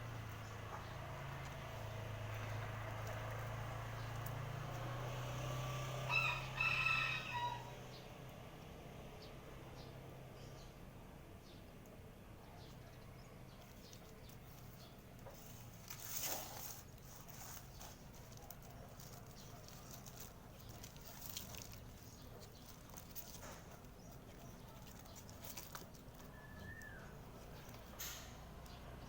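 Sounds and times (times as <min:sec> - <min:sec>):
birds pecking and scuffing: 0:00.0 - 0:05.6, 0:12.7 - 0:29.0
birds rustling: 0:13.5 - 0:28.8.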